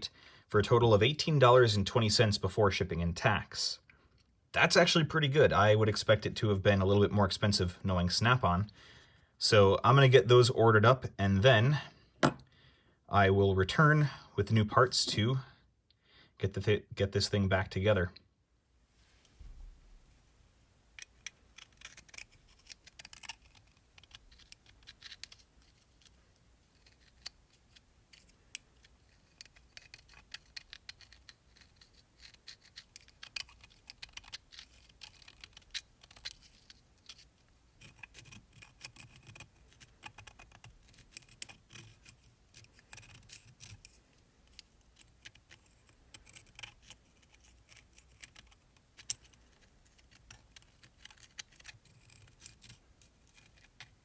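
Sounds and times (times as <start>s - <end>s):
scraping and scratchy rubbing: 21.0s - 54.0s
small metal parts clicking: 26.8s - 53.9s.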